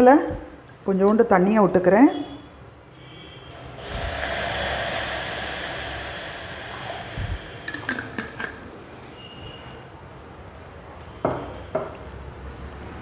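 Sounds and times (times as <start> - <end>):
water hissing in hot pan: 3.5 - 8.2.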